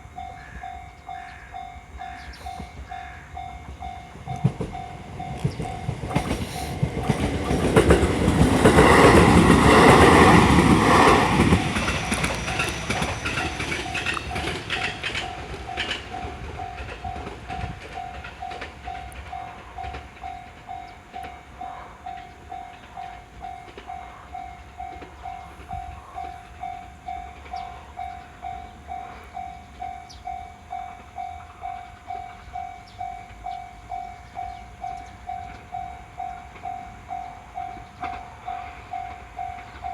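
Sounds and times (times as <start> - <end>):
crossing warning bell dinging: 0.0 - 39.9
train passing: 0.0 - 39.9.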